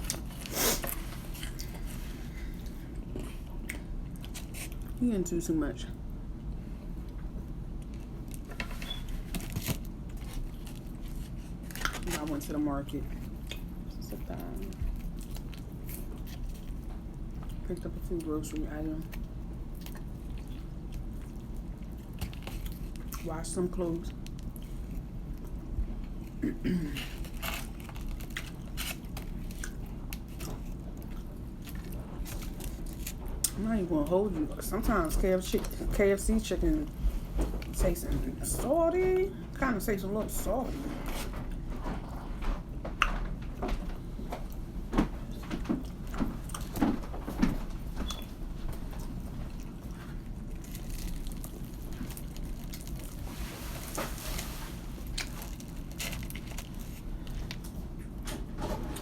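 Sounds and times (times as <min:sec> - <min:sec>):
biting and chewing fried chicken: 0:07.7 - 0:33.6, 0:48.1 - 0:58.2
person chewing fried chicken: 0:19.0 - 0:23.2, 0:24.2 - 0:33.5, 0:49.0 - 0:53.3.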